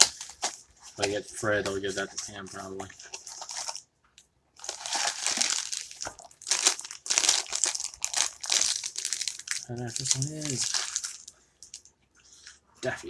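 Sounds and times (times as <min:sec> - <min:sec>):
packaging crinkling and tearing: 0:00.0 - 0:01.2, 0:03.0 - 0:03.8, 0:04.6 - 0:11.9.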